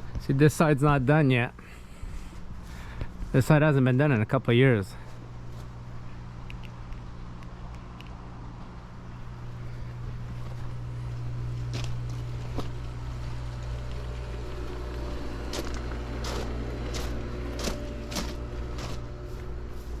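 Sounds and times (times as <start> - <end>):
low engine hum: 4.9 - 20.0
light clicks: 6.4 - 8.2.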